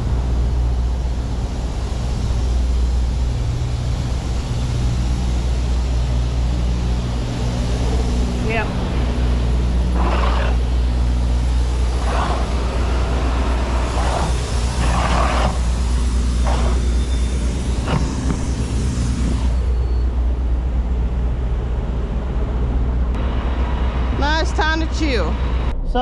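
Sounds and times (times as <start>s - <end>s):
diesel truck engine idling: 0.0s - 26.0s
short noise bursts: 6.6s - 20.4s.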